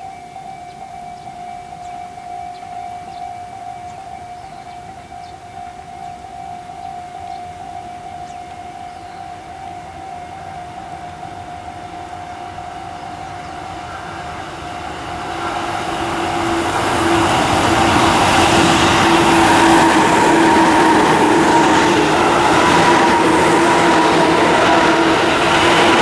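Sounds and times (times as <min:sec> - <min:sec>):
two-pitch train whine: 0:04.9 - 0:26.0
electric train passing: 0:07.5 - 0:26.0.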